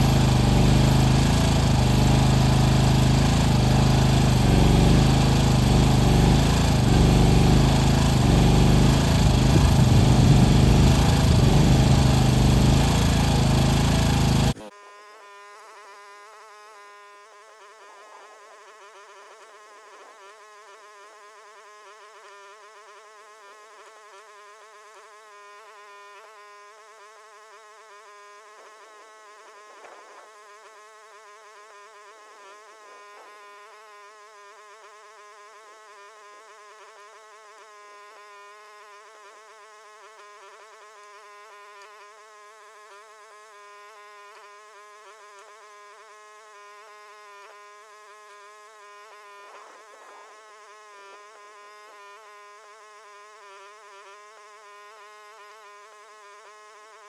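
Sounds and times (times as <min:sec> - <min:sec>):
excavator engine buzzing drone: 0:00.0 - 0:14.7.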